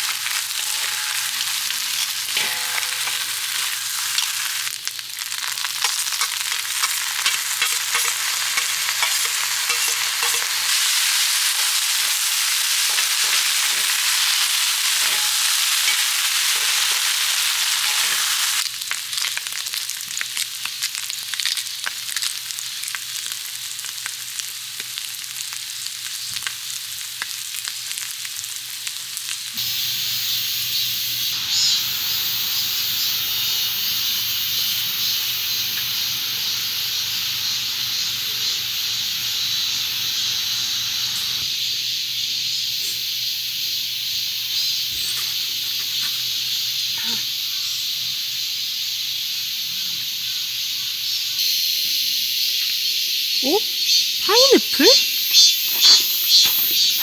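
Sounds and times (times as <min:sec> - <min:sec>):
spattering crackles: 0:00.0 - 0:25.1
food sizzling in a pan: 0:00.0 - 0:57.0.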